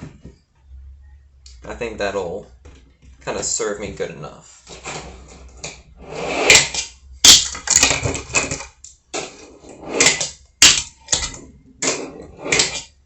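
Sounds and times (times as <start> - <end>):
fingerboard wheels rolling: 4.7 - 6.9.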